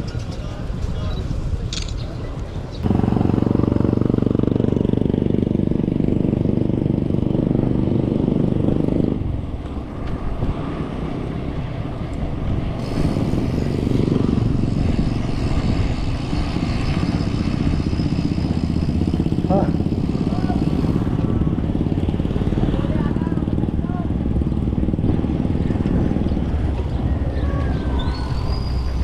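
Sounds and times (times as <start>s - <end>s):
vehicle engine running: 2.8s - 29.0s.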